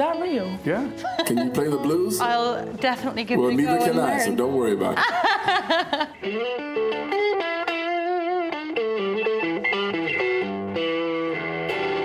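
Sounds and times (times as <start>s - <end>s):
distorted electric guitar blues lick: 6.1s - 12.0s.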